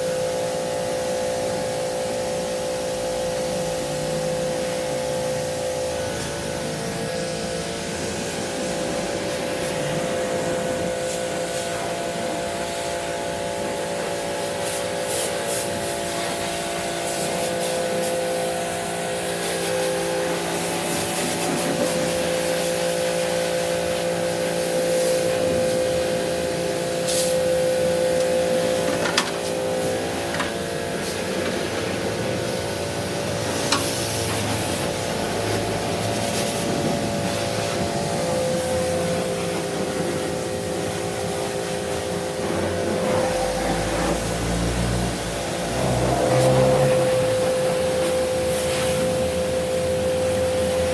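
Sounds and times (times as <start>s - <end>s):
hissing spray: 13.9s - 50.9s
small electric motor running: 43.2s - 50.8s.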